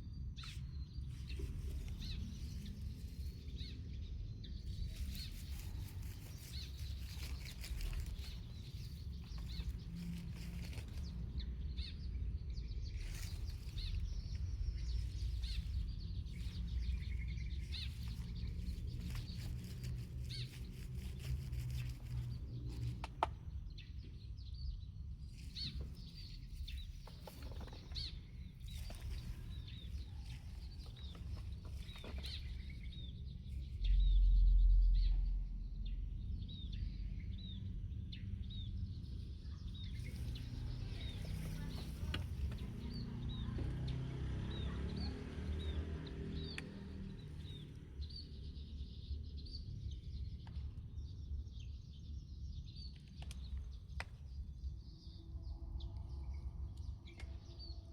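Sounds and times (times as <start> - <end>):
steady low rumble: 0.0 - 43.6
small birds chirping: 0.0 - 57.9.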